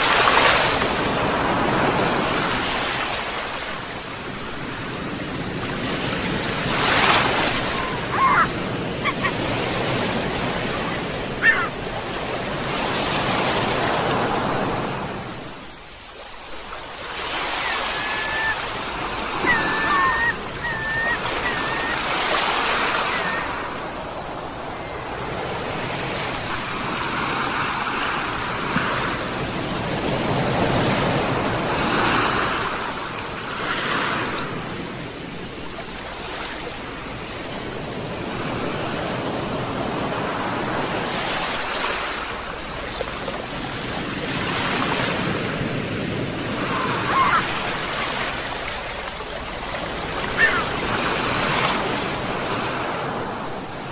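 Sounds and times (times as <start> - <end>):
ocean surf washing: 0.0 - 53.9
gulls calling: 6.8 - 12.8, 17.0 - 26.6, 46.4 - 52.1.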